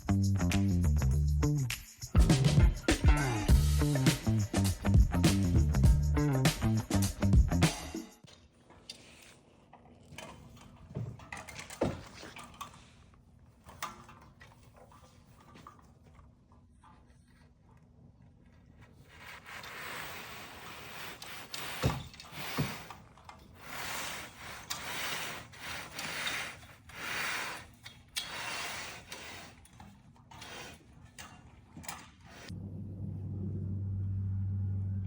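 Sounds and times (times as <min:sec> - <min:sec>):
tool scraping wet concrete: 0:18.9 - 0:31.3
steady low hum: 0:32.5 - 0:35.0.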